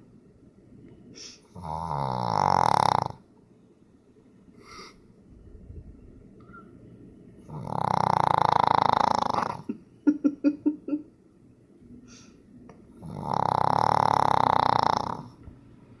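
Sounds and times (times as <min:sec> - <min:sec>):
dog snoring: 0:01.4 - 0:03.3, 0:07.4 - 0:09.7, 0:12.9 - 0:15.4
stuttering snorts: 0:07.5 - 0:09.7, 0:13.0 - 0:15.4.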